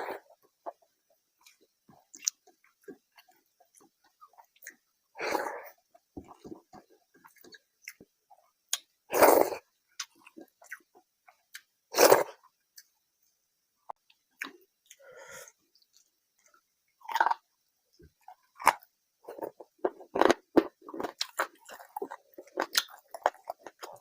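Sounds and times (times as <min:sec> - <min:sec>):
person chewing: 0:01.4 - 0:10.9, 0:15.8 - 0:17.4, 0:18.2 - 0:24.0.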